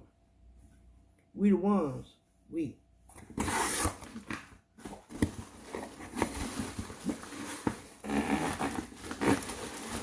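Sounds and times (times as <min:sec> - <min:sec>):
packaging rustling: 0:03.4 - 0:10.0.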